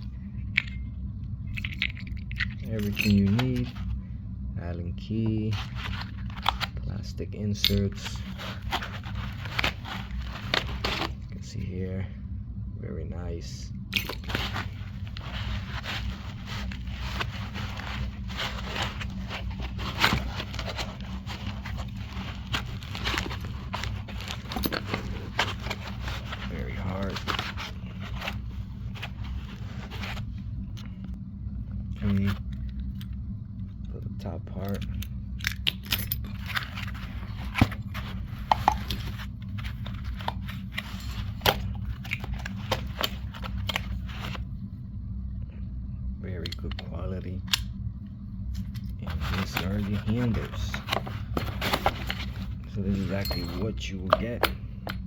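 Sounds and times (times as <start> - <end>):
steady low hum: 0.0 - 55.0
packaging rustling: 5.4 - 6.8, 7.8 - 11.3, 14.0 - 31.0, 36.2 - 44.4, 48.6 - 54.4.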